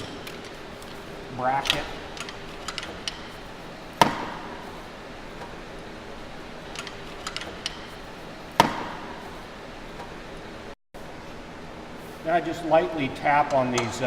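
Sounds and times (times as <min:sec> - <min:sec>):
metal-on-metal knocks: 0:01.6 - 0:04.7, 0:08.6 - 0:09.3.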